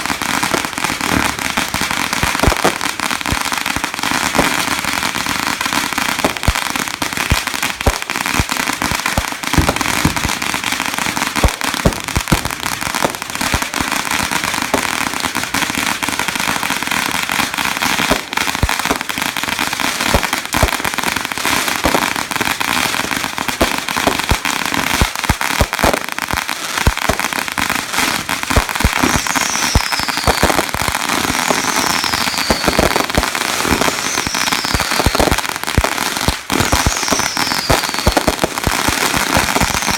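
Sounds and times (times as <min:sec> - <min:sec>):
fireworks crackling and banging: 0:00.0 - 0:39.9
high falling whistle: 0:31.6 - 0:32.8.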